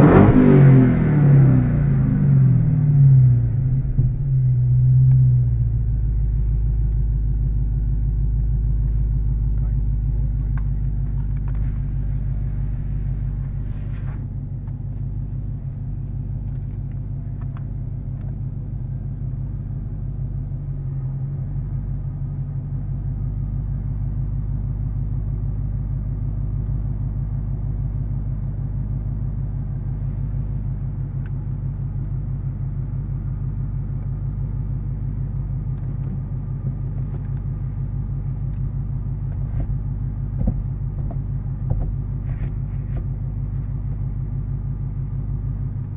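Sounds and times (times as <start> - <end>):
car engine rumbling: 0.0 - 45.9
brief thump: 39.3 - 43.1.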